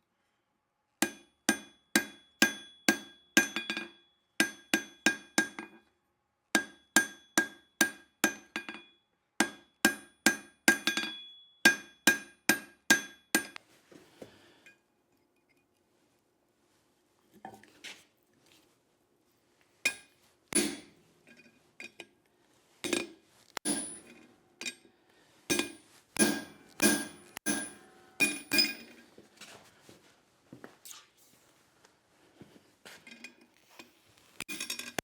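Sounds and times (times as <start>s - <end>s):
hammer ringing on anvil: 1.0s - 5.7s, 6.6s - 13.6s, 23.6s - 24.8s, 25.5s - 29.0s.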